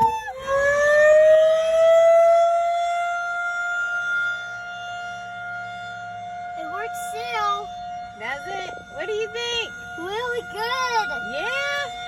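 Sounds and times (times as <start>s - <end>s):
tornado warning siren wailing: 0.0s - 12.0s.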